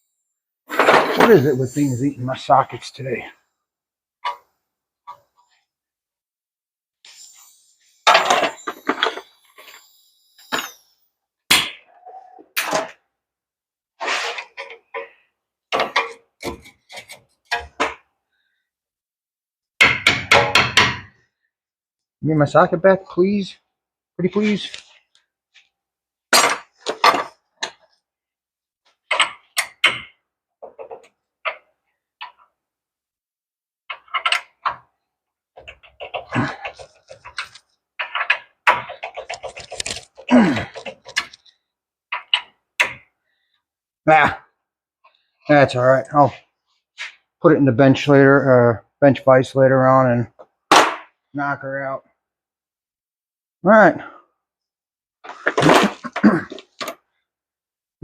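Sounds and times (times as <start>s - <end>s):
sharp metal knocks and clanks: 19.8s - 21.1s.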